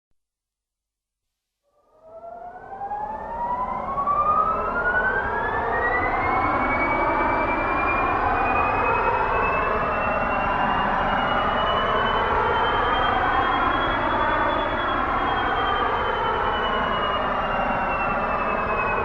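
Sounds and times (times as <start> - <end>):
jet engine whine spooling up: 2.0 - 19.0.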